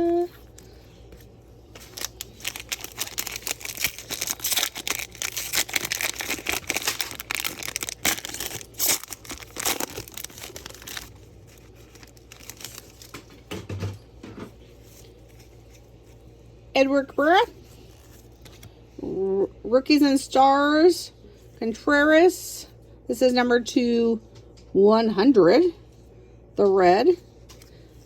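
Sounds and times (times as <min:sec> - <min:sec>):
foil wrapper tearing and crinkling: 0:01.7 - 0:13.4.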